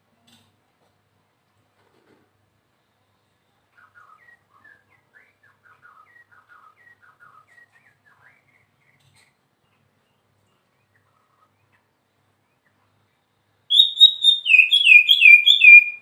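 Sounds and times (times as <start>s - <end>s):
bird singing whistled notes: 3.8s - 8.7s, 13.7s - 16.0s.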